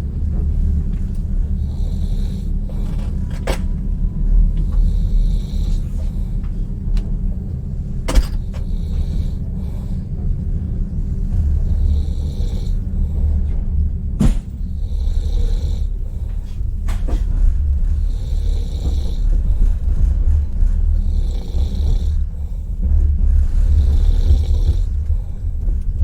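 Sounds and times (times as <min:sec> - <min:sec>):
low rumble of running train: 0:00.0 - 0:26.0
sharp knocks: 0:08.1 - 0:09.0, 0:14.2 - 0:14.6
person snoring: 0:14.7 - 0:16.1, 0:21.0 - 0:22.7.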